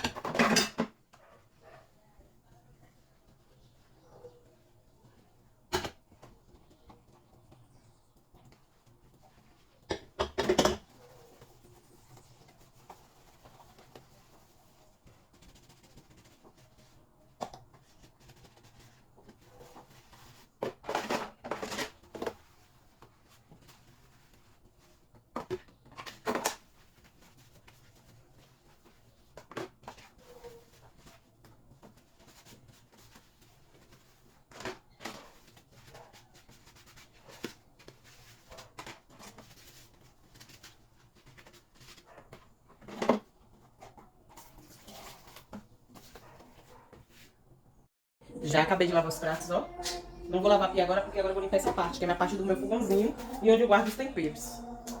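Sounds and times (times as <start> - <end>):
plates and utensils clattering: 0.0 - 1.0, 9.9 - 10.9.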